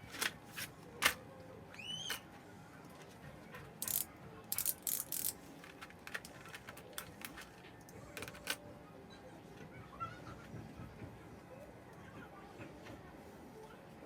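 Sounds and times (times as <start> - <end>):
plastic parts clicking: 3.8 - 8.6.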